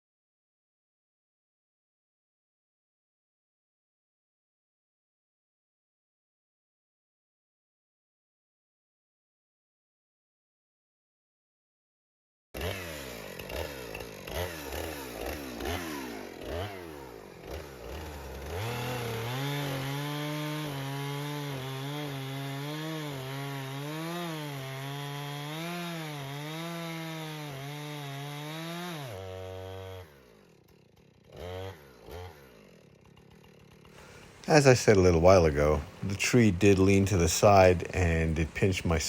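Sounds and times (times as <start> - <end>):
chainsaw revving and cutting wood: 12.6 - 39.0.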